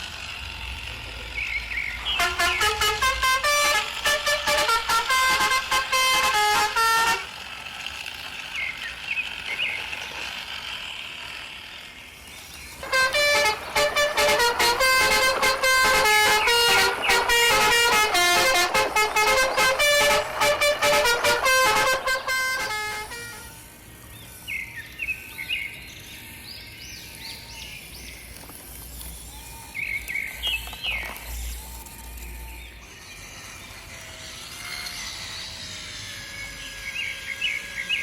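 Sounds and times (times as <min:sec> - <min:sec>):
steady hiss: 0:01.9 - 0:26.3
musical truck horn tune: 0:02.0 - 0:07.6, 0:12.8 - 0:23.8.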